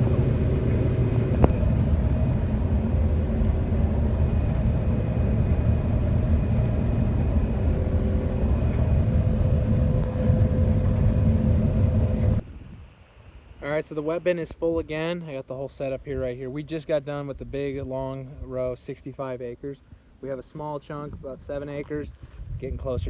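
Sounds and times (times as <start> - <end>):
diesel machine rumbling: 0.0 - 12.5.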